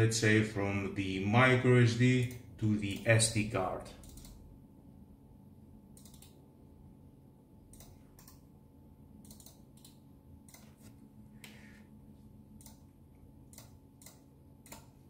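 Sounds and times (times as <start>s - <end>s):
low steady hum: 0.0s - 15.0s
computer mouse clicks: 4.0s - 4.4s, 6.0s - 6.4s, 7.7s - 8.5s, 9.2s - 11.6s, 12.6s - 12.9s, 13.5s - 15.0s.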